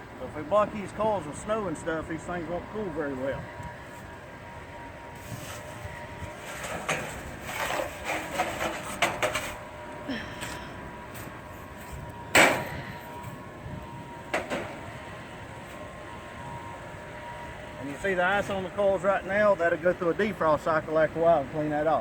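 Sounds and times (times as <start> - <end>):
faint steady hum: 0.0 - 22.0
knocking ice off metal unit: 6.4 - 9.6, 12.3 - 12.9, 14.3 - 14.9.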